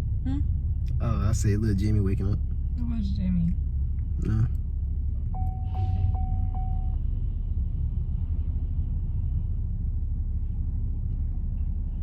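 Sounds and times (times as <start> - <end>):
car cabin road rumble: 0.0 - 12.0
electronic tone: 5.4 - 7.0.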